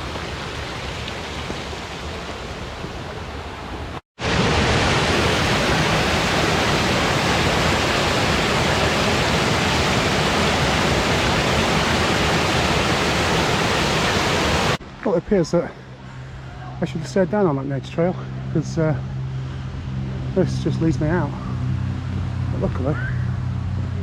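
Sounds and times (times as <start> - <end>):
flowing river water: 0.0 - 14.8.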